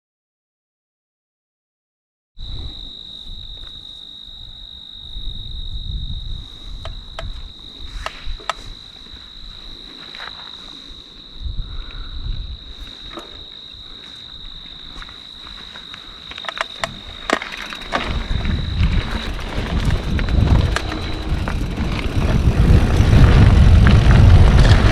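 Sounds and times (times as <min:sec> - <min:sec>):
crickets trilling: 0:02.4 - 0:24.9
sharp clicks: 0:16.3 - 0:18.4
low rumbles: 0:16.8 - 0:24.9.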